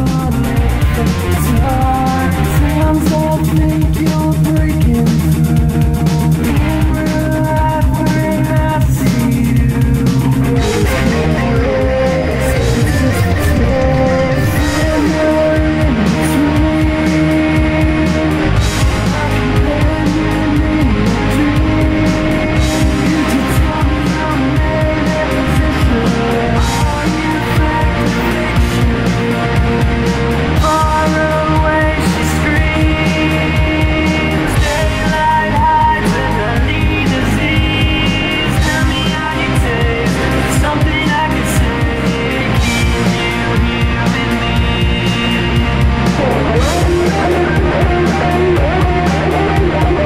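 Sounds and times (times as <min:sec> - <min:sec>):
loud rock music: 0:00.0 - 0:50.0.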